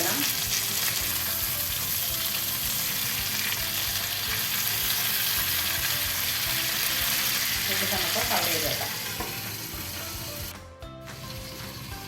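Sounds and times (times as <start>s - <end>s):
chicken sizzling in oil: 0.0s - 12.0s.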